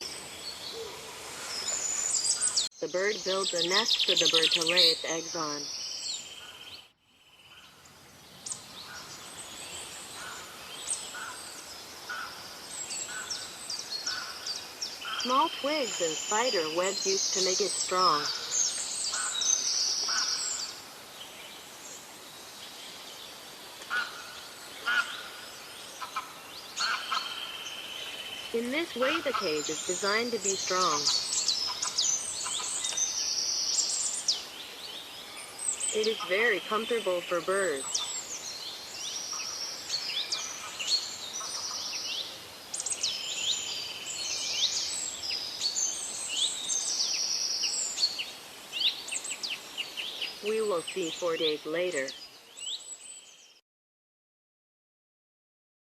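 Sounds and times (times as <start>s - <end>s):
steady background hiss: 0.0s - 53.4s
songbirds chirping and trilling: 0.0s - 53.6s
short bird calls: 12.1s - 20.8s.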